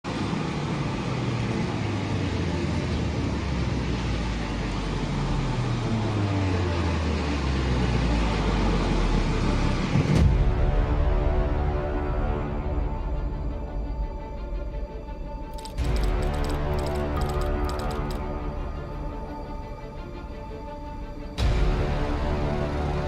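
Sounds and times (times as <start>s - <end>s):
street noise rush: 0.1s - 10.2s, 15.5s - 18.4s
vehicle engines droning: 0.1s - 10.2s
tense background music: 0.1s - 23.0s.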